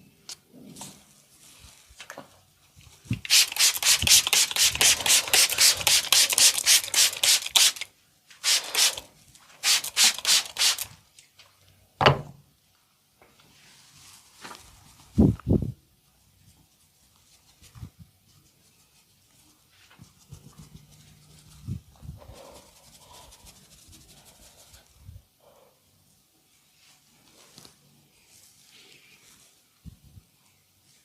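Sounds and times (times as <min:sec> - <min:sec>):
hands rubbing over hair: 0:03.1 - 0:10.9, 0:16.6 - 0:25.0.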